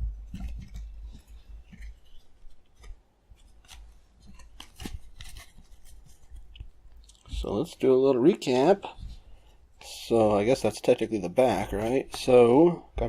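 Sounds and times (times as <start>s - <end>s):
cards and packaging handled: 0.1s - 7.8s.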